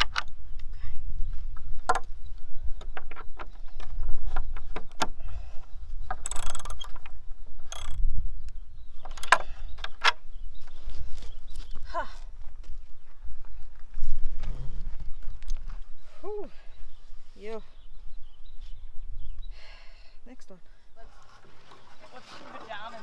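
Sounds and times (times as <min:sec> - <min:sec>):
hand tools clicking and knocking: 0:06.0 - 0:08.0, 0:09.1 - 0:10.2.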